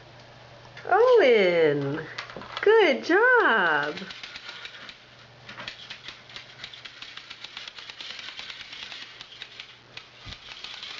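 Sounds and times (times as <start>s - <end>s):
low steady hum: 0.0s - 10.9s
plastic toys clicking and rattling: 3.4s - 10.9s.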